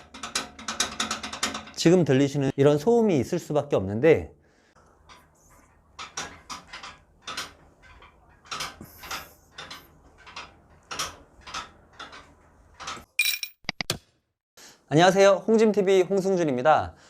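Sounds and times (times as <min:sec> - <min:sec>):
metal frame knocking and clacking: 0:00.0 - 0:02.2, 0:05.0 - 0:13.1.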